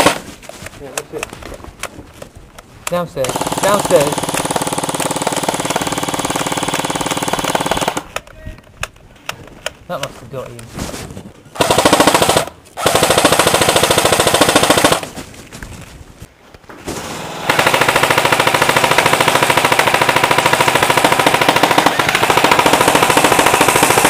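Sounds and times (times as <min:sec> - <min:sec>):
airsoft guns firing full auto: 0:00.0 - 0:00.2, 0:03.2 - 0:08.2, 0:11.6 - 0:15.1, 0:17.1 - 0:24.0.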